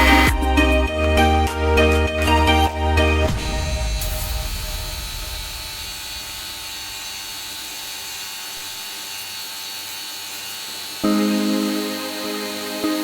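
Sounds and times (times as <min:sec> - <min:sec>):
machine hiss with high whine: 0:03.4 - 0:13.0.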